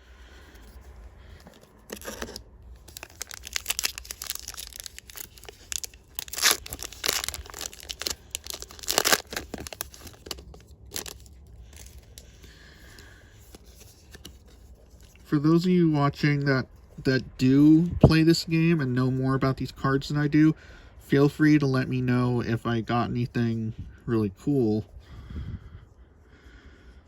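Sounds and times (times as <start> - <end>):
wrapper tearing and crinkling: 1.4 - 12.4.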